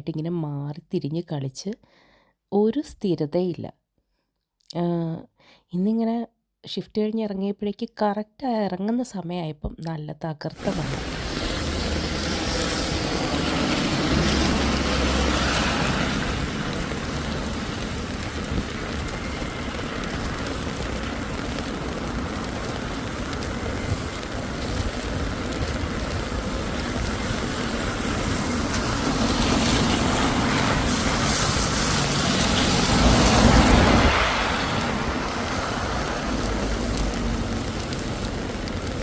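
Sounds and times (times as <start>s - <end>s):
vehicle passing: 10.6s - 23.6s, 26.4s - 38.8s
heavy rain hissing: 10.6s - 39.0s
traffic on a wet road: 10.6s - 39.0s.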